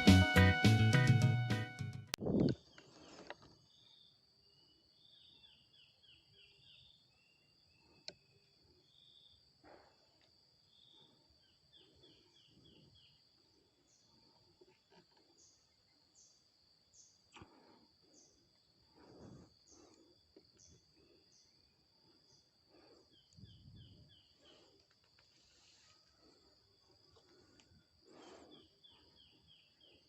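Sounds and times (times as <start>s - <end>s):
small birds calling: 2.5s - 30.0s
high insect trill: 10.2s - 30.0s.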